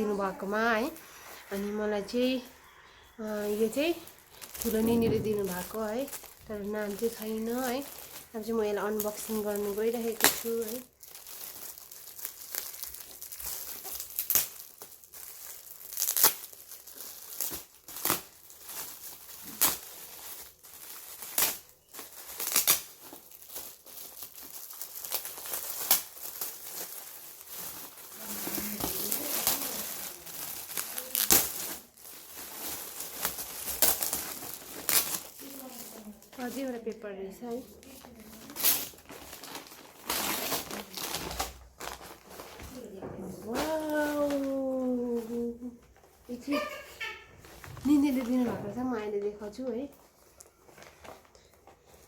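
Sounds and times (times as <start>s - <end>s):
wrapping paper crinkling: 0.0s - 52.0s
paper ripping: 22.3s - 36.7s, 37.7s - 45.5s.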